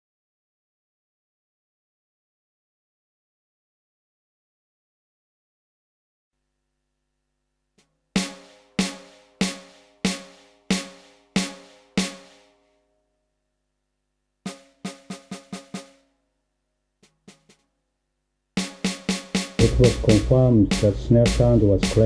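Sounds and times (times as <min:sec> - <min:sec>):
electronic snare drum hits: 0:08.2 - 0:12.4, 0:14.5 - 0:16.0, 0:18.6 - 0:22.0.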